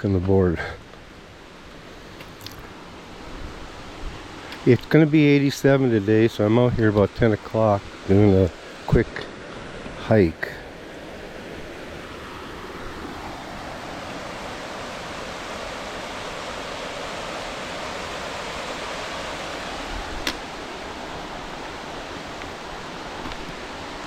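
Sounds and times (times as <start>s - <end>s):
water rushing: 0.0s - 24.0s
sharp click: 20.2s - 20.4s.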